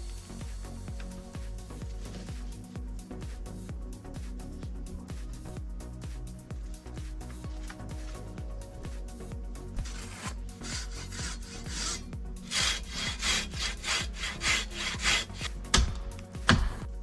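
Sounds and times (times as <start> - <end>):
hand saw cutting wood: 9.8 - 15.5.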